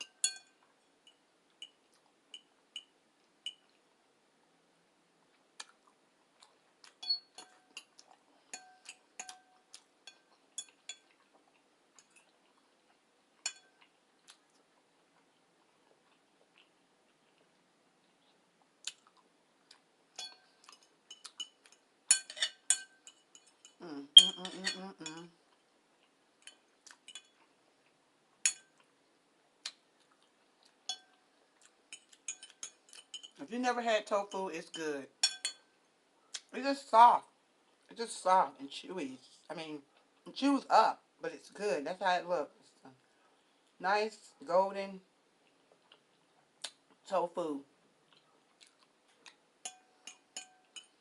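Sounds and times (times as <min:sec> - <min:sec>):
utensil clinking against a dish: 0:00.0 - 0:03.7, 0:07.0 - 0:11.2, 0:13.4 - 0:13.8, 0:20.2 - 0:25.3, 0:26.4 - 0:27.4, 0:28.5 - 0:28.8, 0:30.9 - 0:31.2, 0:31.9 - 0:33.5, 0:34.2 - 0:35.7, 0:49.6 - 0:51.0.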